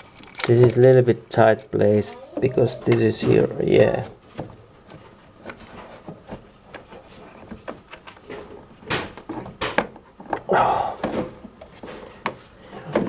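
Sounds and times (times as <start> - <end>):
small clicks and knocks of parts: 0.0 - 1.8.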